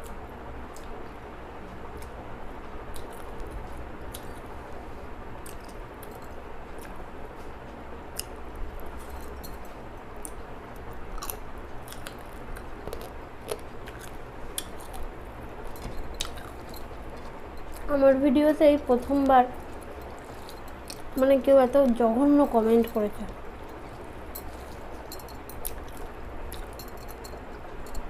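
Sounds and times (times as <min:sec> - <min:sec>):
person chewing: 0:11.1 - 0:17.9, 0:19.6 - 0:21.1, 0:23.6 - 0:27.2.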